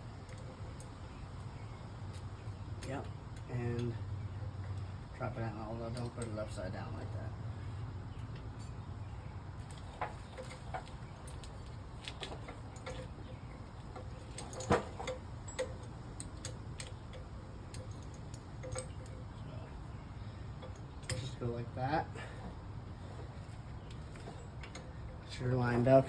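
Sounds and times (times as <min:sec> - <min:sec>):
low steady hum: 0:00.0 - 0:26.0
metal parts clicking and tapping: 0:05.8 - 0:06.6, 0:09.6 - 0:19.5, 0:20.6 - 0:21.5, 0:22.4 - 0:26.0.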